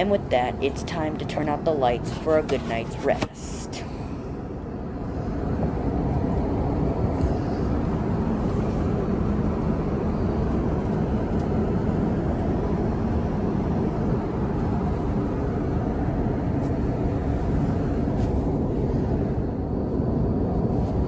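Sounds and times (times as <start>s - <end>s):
jet airliner cabin engine noise: 0.0s - 21.0s.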